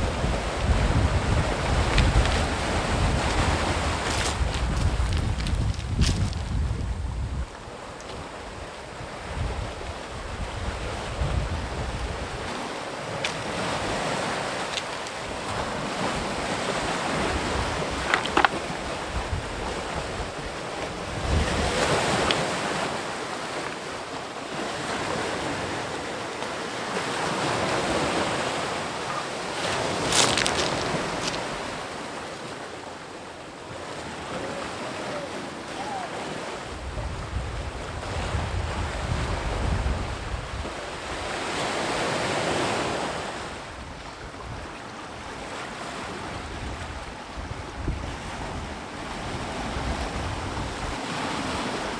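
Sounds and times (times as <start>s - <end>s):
wind buffeting microphone: 0.0s - 14.7s, 15.3s - 23.0s, 36.6s - 41.6s, 43.0s - 51.9s
sea waves breaking: 0.0s - 51.9s.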